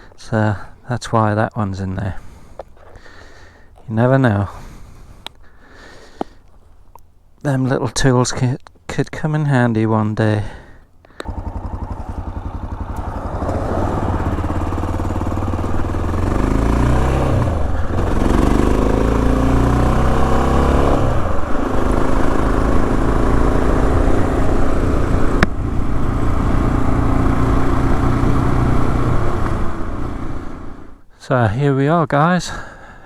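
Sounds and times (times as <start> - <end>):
motorcycle engine accelerating: 11.2 - 31.1.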